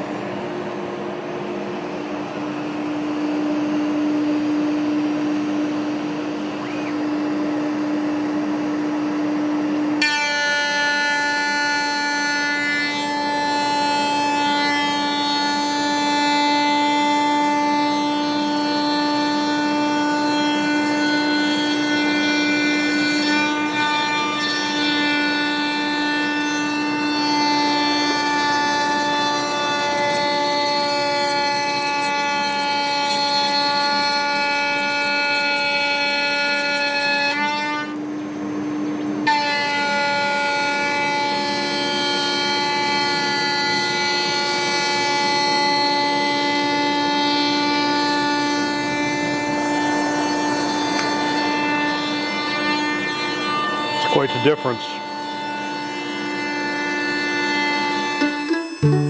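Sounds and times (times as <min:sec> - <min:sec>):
router spindle whining: 0:00.0 - 0:59.0
router bit cutting wood: 0:01.9 - 0:59.0
spindle whining: 0:02.1 - 0:10.0, 0:50.1 - 0:59.0.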